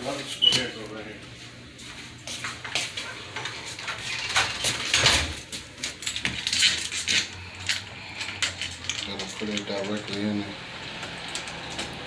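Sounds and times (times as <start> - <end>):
metallic clinks and scrapes of hardware: 3.4 - 10.3.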